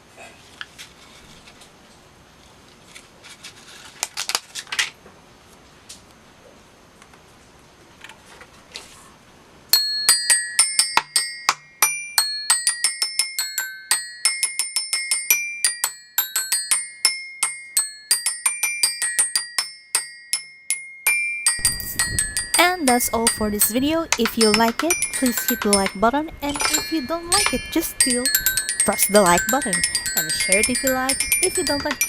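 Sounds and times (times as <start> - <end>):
toy xylophone notes: 9.8 - 32.0.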